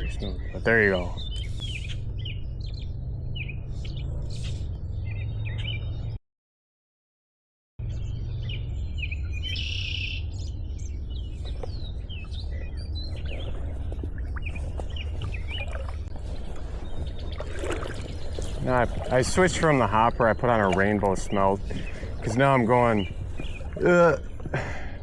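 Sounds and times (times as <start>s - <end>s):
songbirds chirping: 0.0s - 6.2s, 7.8s - 25.0s
low background rumble: 7.8s - 25.0s.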